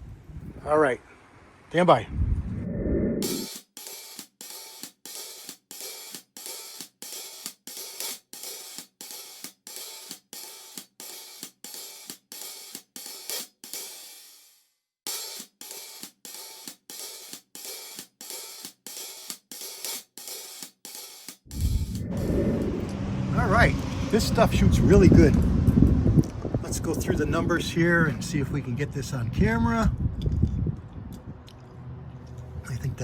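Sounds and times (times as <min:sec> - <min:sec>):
background music with cymbal beat: 0:03.2 - 0:22.0.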